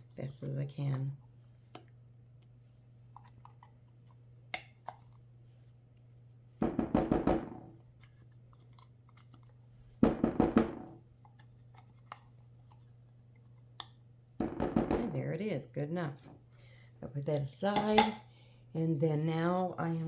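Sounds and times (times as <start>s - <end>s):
container knocking against bowl: 6.6s - 7.8s, 10.0s - 11.0s, 14.4s - 15.2s.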